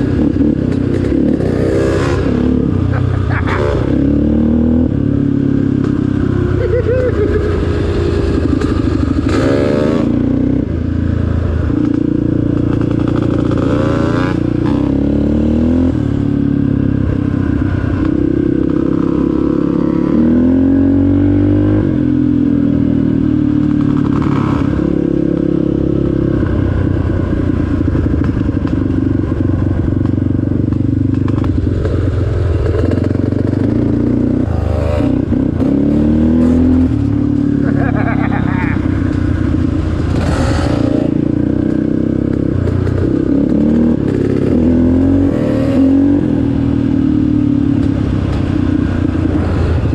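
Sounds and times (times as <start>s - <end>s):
off-road vehicle engine revving: 0.0s - 10.5s, 32.8s - 49.9s.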